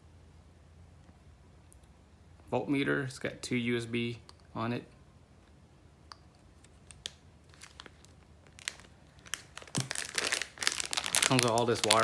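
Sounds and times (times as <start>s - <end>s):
packaging crinkling: 6.7s - 12.0s.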